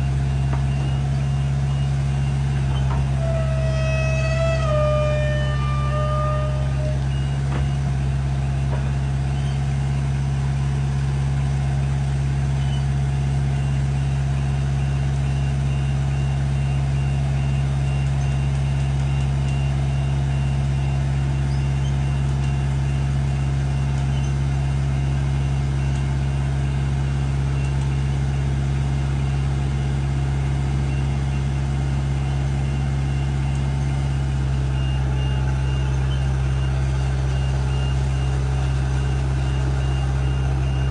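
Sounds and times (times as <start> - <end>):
high-pitched alarm beeping: 0.0 - 9.7, 32.6 - 40.9
heavy equipment engine running: 0.0 - 40.9.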